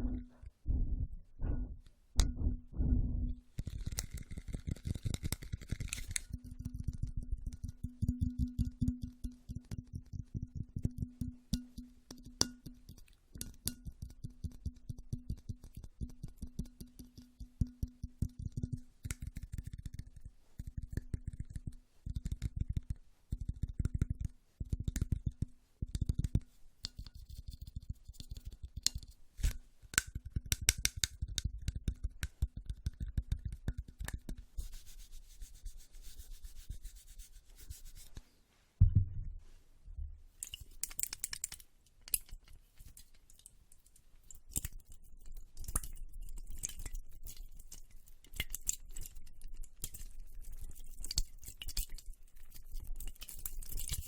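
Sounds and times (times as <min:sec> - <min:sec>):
low thump: 0:00.0 - 0:03.4, 0:38.8 - 0:40.2
soft rubbing and scratching: 0:02.4 - 0:07.8, 0:34.0 - 0:39.7, 0:42.2 - 0:54.0
fast crisp clicks and crackles: 0:03.5 - 0:08.9, 0:18.2 - 0:34.4, 0:40.4 - 0:54.0.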